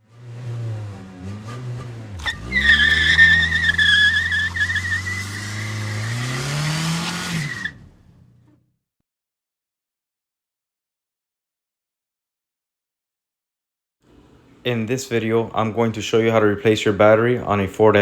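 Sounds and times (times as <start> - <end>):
car engine revving: 0.0 - 8.6
high tyre screech: 0.0 - 8.6.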